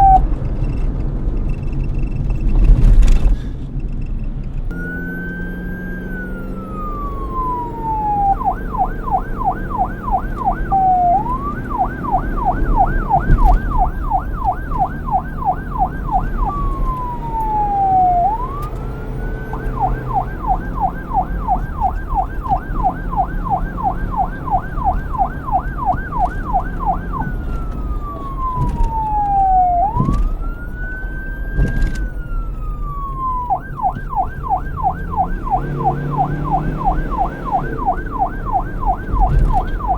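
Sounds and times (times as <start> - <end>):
police siren wailing and yelping: 0.0 - 0.2, 4.7 - 39.9.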